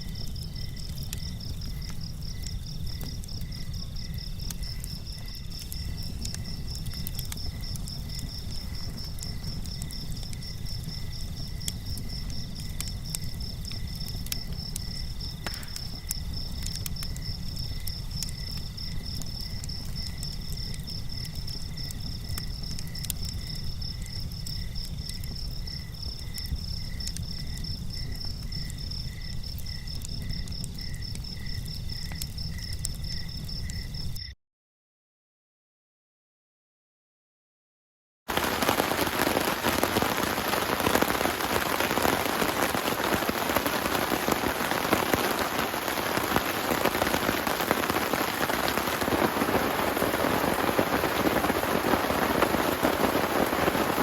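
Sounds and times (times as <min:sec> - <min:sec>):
crickets chirping in pulses: 0:00.0 - 0:34.4, 0:38.3 - 0:54.0.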